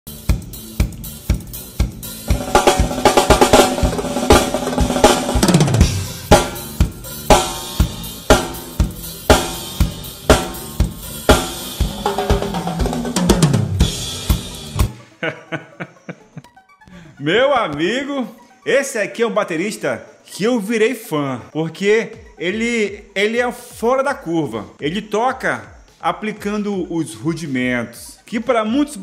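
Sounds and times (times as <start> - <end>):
drum kit playing fast groove: 0.1 - 15.0.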